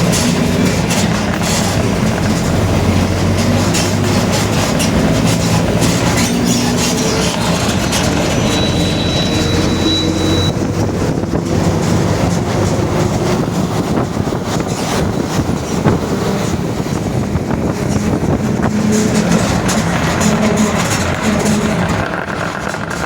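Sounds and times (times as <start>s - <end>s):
bus diesel engine running: 0.0s - 23.0s
differential droning growl: 17.6s - 23.0s.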